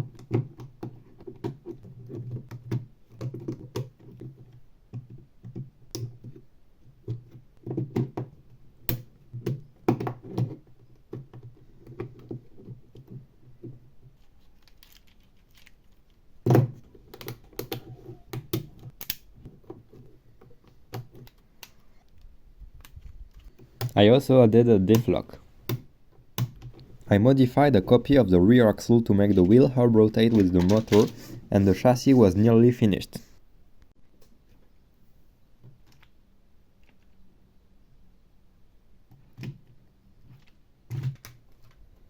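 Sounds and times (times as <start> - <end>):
plastic parts snapping together: 14.6 - 19.3.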